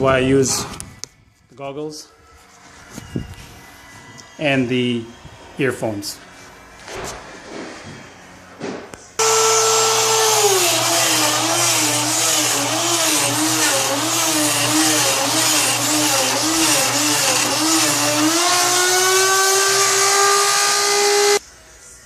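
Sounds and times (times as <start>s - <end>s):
electric drill boring wood: 9.2s - 21.4s.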